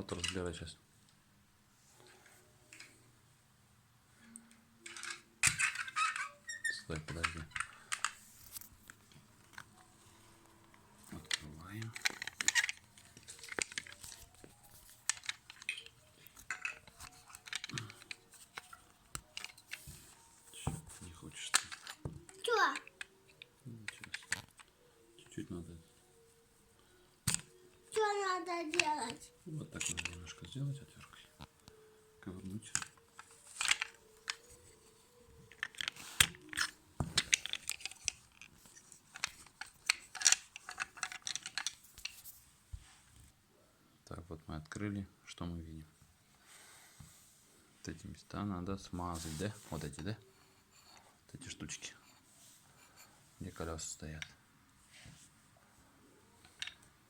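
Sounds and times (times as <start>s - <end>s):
toy car clicks and clatter: 4.8s - 8.2s, 11.2s - 19.8s, 21.4s - 24.7s, 27.3s - 29.2s, 29.8s - 30.5s, 32.7s - 34.6s, 35.5s - 42.2s.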